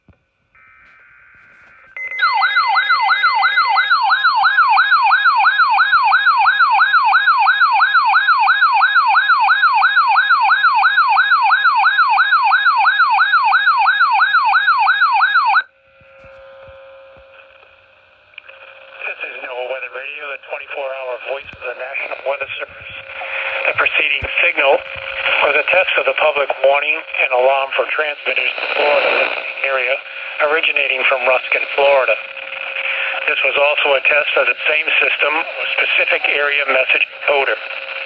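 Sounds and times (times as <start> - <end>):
electronic alert siren warbling: 0.6 - 15.6.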